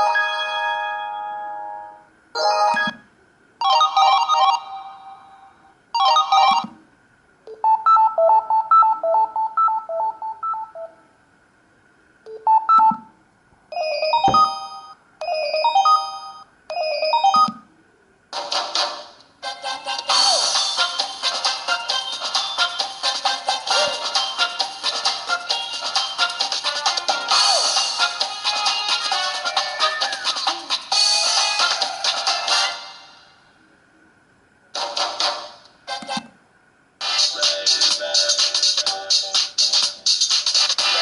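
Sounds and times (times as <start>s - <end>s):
phone ringtone melodies: 0.0s - 3.0s, 3.6s - 5.1s, 6.0s - 6.7s, 13.8s - 17.5s.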